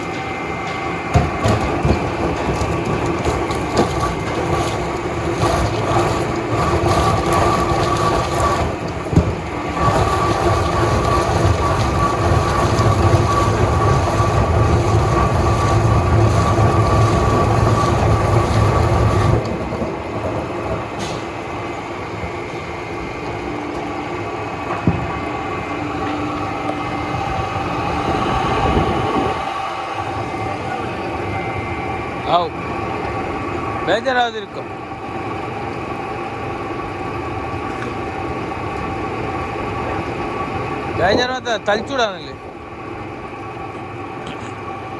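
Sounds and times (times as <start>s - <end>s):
mechanical knocks: 0.0s - 22.6s
veneer peeling machine hum: 0.0s - 44.9s.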